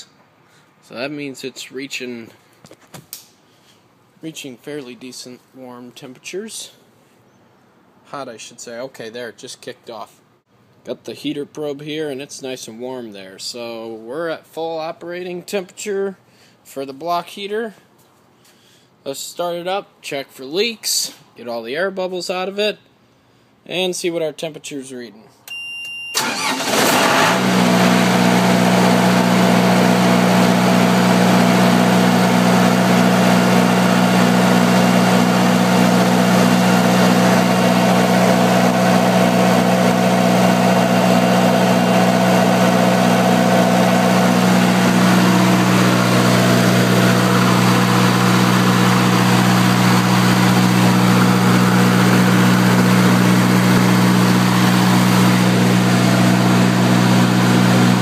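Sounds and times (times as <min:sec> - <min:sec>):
diesel generator engine running: 0:26.2 - 0:58.0.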